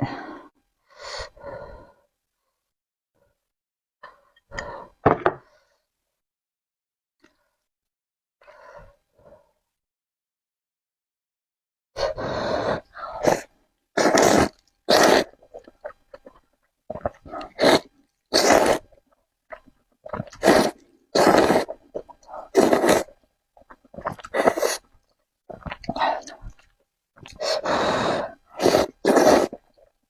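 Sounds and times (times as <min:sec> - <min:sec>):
loud slurps of noodles: 0:12.6 - 0:15.4, 0:17.0 - 0:18.9, 0:20.1 - 0:23.2, 0:24.0 - 0:24.8, 0:27.3 - 0:29.8.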